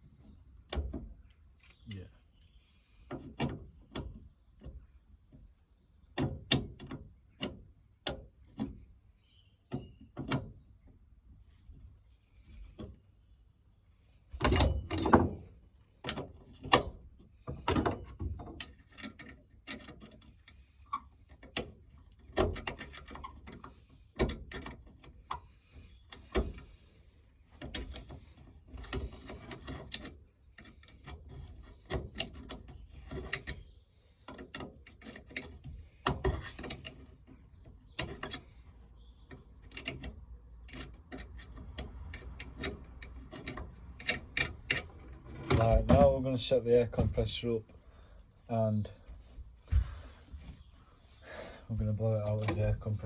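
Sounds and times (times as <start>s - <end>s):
knocks and clatter of handling: 14.4s - 20.5s, 39.2s - 47.4s, 51.8s - 53.0s.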